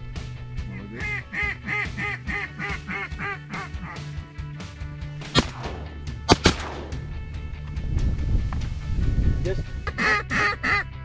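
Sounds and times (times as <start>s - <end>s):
duck call quacks: 0.8s - 4.2s, 9.9s - 11.0s
shotgun shots: 5.2s - 7.2s.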